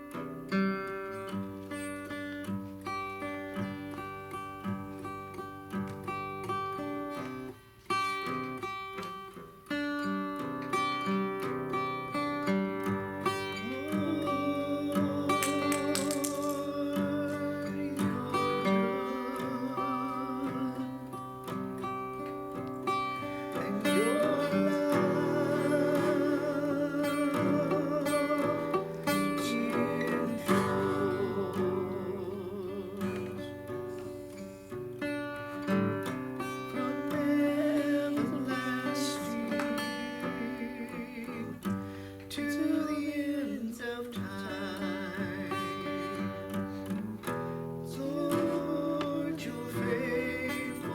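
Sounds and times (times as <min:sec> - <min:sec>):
acoustic guitar music: 0:00.0 - 0:50.9.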